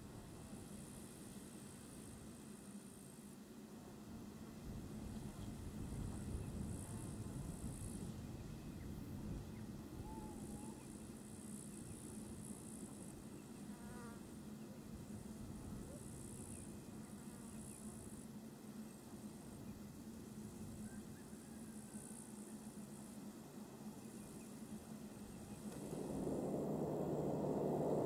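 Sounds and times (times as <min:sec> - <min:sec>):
faint bird chirps: 0:09.5 - 0:12.0
insects buzzing: 0:15.9 - 0:28.0
steady low rumble: 0:25.3 - 0:28.0.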